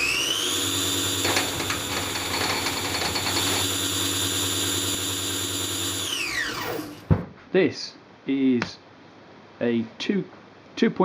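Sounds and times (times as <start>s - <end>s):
spindle motor high-pitched whine: 0.0s - 7.1s.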